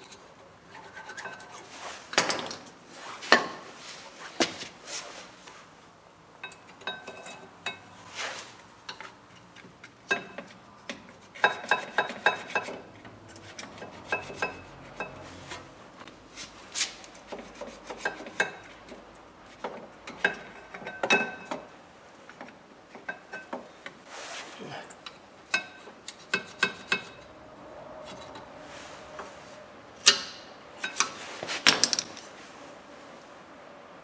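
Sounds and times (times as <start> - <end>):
metal clinking and scraping: 28.0 - 32.4.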